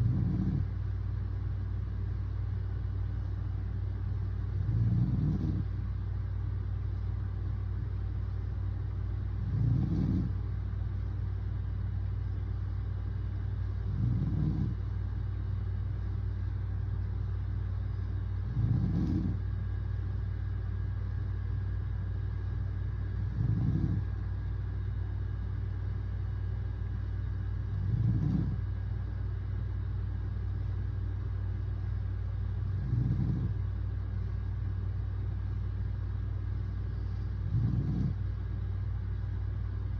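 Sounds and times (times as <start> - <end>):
man snoring: 0.0 - 0.7, 4.6 - 5.7, 9.4 - 10.3, 13.9 - 14.8, 18.4 - 19.4, 23.2 - 24.0, 27.7 - 28.6, 32.7 - 33.6, 37.4 - 38.2
steady low hum: 0.0 - 39.9.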